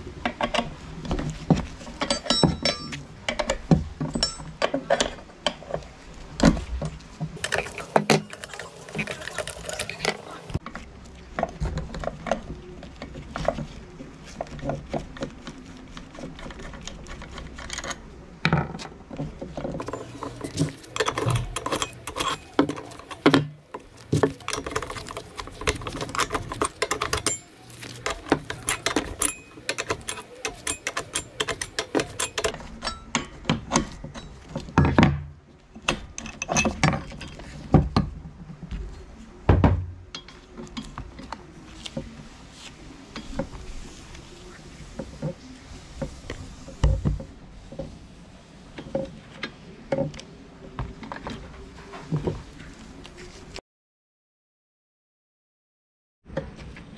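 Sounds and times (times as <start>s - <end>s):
metal tools clinking: 2.0s - 3.0s, 4.1s - 4.7s, 19.8s - 33.4s.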